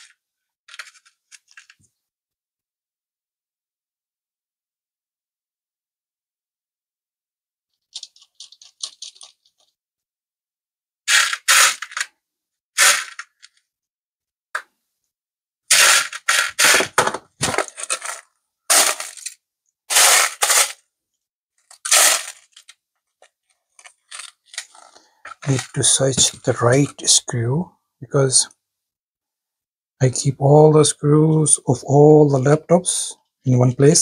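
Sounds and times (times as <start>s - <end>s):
metal screws rattling: 7.9s - 9.7s.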